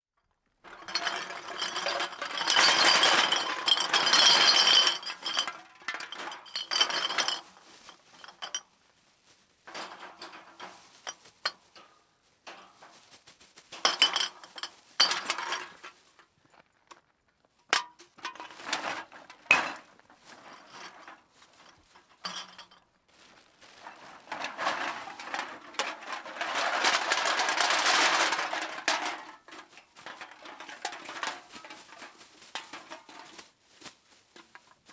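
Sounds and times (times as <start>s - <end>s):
metal cans clattering: 0.6s - 8.6s, 9.7s - 11.6s, 12.5s - 13.0s, 13.8s - 16.0s, 17.7s - 22.8s, 23.7s - 33.5s.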